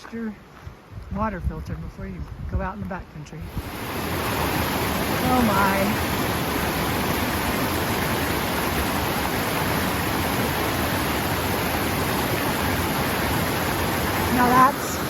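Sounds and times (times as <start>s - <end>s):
creek water rushing: 3.4s - 15.0s.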